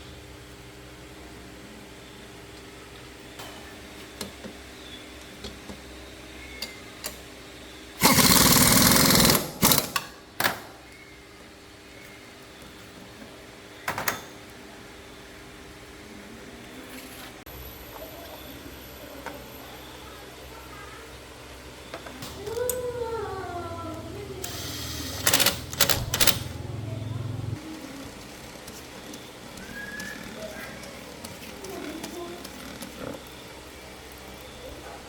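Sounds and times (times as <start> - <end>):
power tool rattling: 8.0 - 10.1, 24.4 - 26.5
steady low hum: 21.3 - 34.4.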